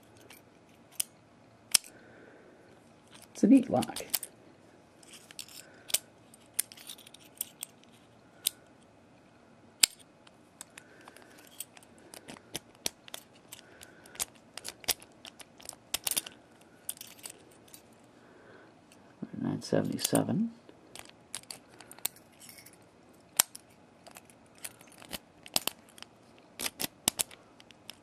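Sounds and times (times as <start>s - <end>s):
padlock metallic clicks: 1.7s - 1.9s, 23.3s - 28.0s.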